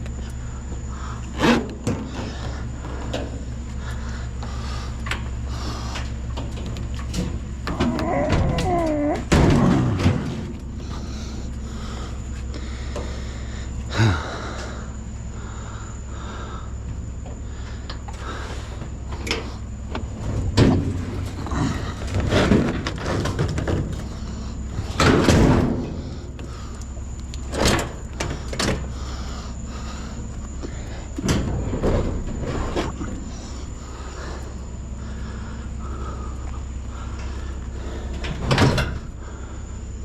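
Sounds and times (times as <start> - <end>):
low engine hum: 0.0 - 40.0
clunks and knocks: 1.3 - 3.5, 5.9 - 11.2, 16.8 - 26.6, 27.4 - 29.2, 29.9 - 33.5, 37.2 - 39.2.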